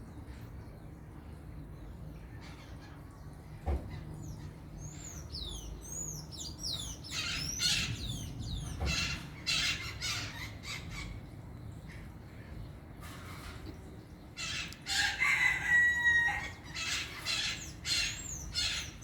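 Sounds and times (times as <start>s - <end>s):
parakeets chirping and squawking: 4.3s - 11.2s, 14.4s - 15.7s, 16.4s - 19.0s.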